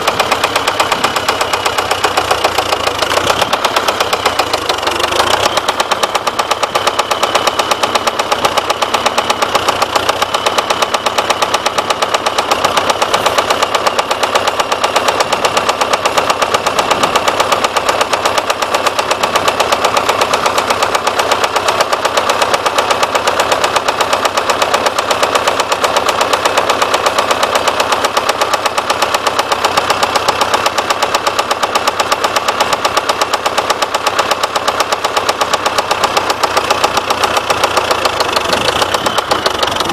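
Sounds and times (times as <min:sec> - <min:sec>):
diesel engine with rhythmic knock: 0:00.0 - 0:39.9.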